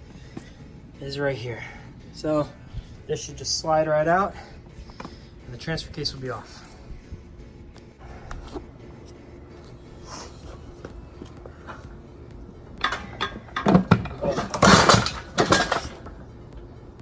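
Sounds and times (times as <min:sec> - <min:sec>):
metal clanking and knocking: 0:12.8 - 0:16.3.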